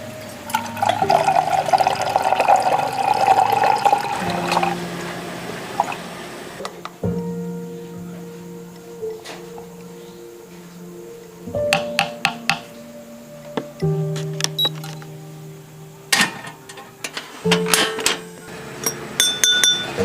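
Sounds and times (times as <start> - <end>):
background music with held notes: 0.0 - 19.2
liquid pouring: 0.4 - 6.6.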